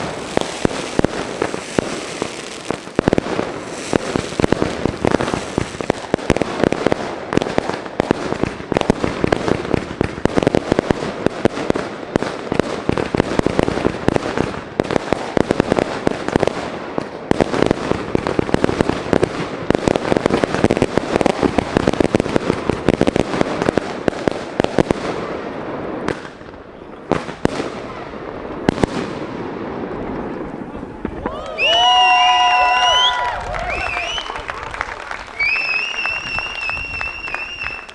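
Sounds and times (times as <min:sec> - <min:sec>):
fireworks crackling bangs: 0:00.0 - 0:37.9.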